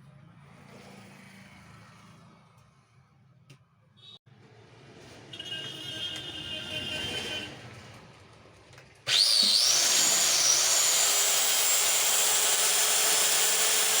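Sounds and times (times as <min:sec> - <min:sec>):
marble cutter motor whining: 0:09.1 - 0:14.0.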